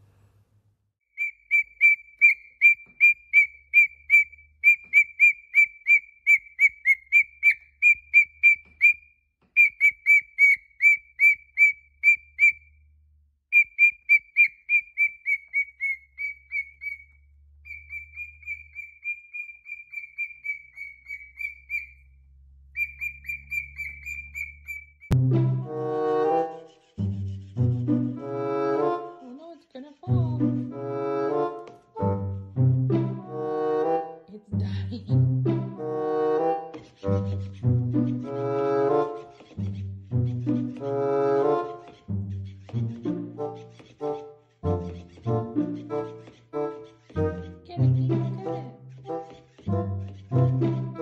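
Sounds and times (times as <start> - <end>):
parrot whistling high notes: 1.2 - 12.7, 13.5 - 22.0, 22.8 - 25.1.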